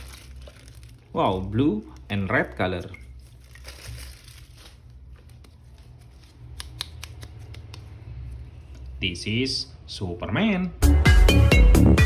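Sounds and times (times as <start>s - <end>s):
plastic packaging rustling: 0.0s - 6.6s.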